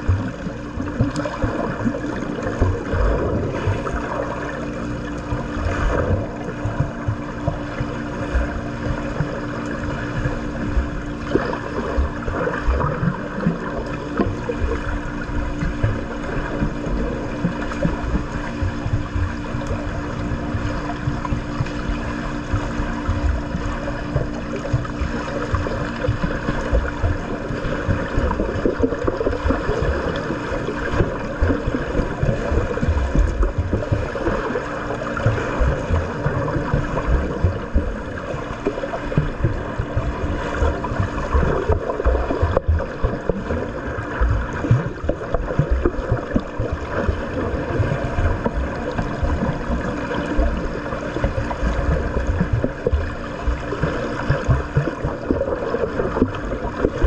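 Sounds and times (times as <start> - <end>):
pool water splashing: 0.0 - 57.0.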